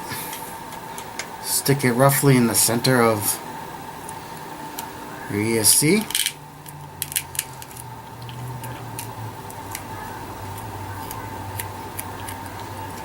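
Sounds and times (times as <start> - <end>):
steady low hum: 0.0 - 13.0
tape crackling: 4.0 - 13.0.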